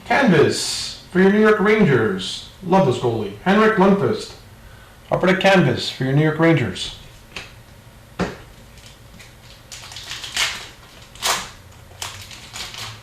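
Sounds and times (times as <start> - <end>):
trading card packs rustling: 8.7 - 13.0.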